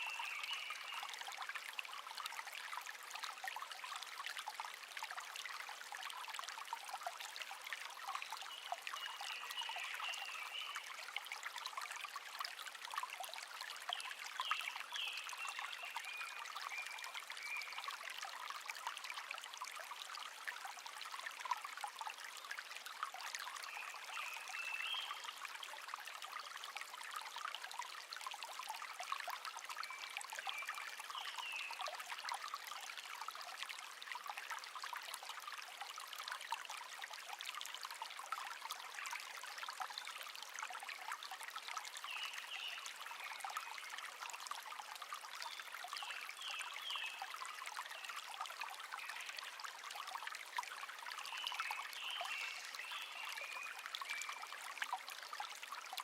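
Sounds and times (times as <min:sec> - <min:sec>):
shallow stream babbling: 0:00.0 - 0:56.0.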